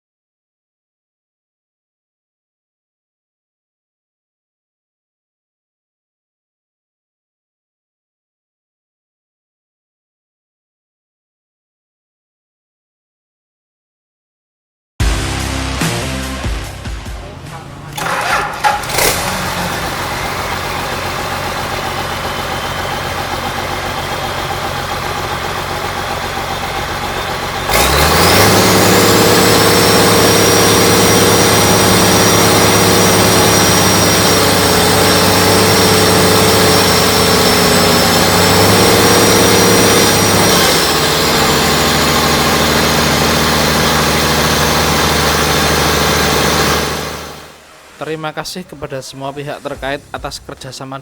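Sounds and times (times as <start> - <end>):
diesel engine running: 15.0 - 51.0
high turbo whine: 15.0 - 51.0.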